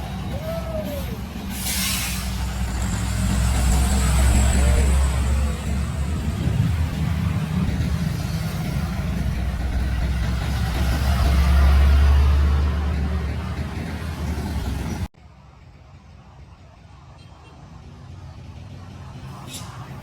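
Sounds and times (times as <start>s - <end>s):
truck diesel engine under load: 0.0s - 20.0s.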